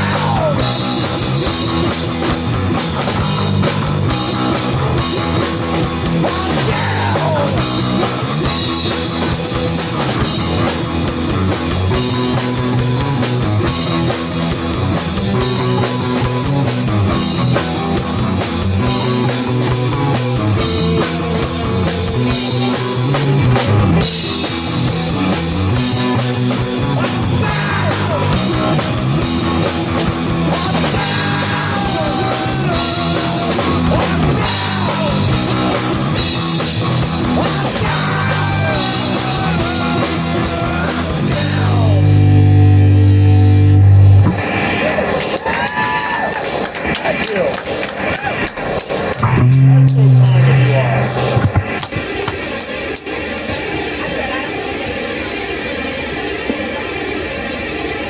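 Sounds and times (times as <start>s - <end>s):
live rock band playing: 0.0s - 44.6s, 49.2s - 51.8s
lead guitar bending notes: 41.4s - 44.4s, 49.2s - 51.8s.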